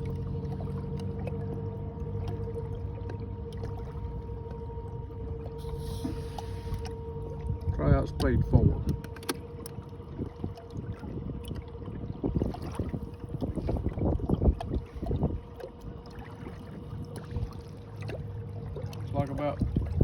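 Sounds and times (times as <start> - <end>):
water rushing along hull: 0.0 - 20.0
electric motor whine: 1.8 - 9.9.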